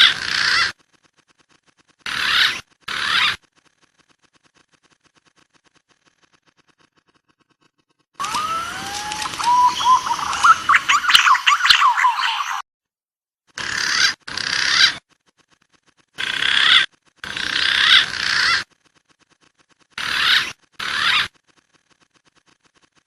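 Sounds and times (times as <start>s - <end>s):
pigeon whistling calls: 8.2s - 12.6s.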